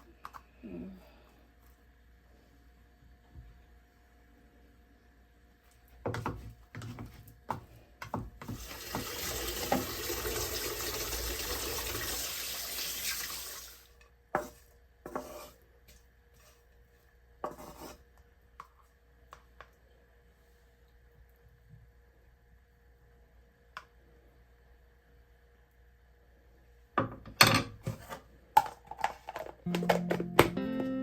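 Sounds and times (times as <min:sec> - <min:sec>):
tap water running into sink: 0:08.4 - 0:13.9.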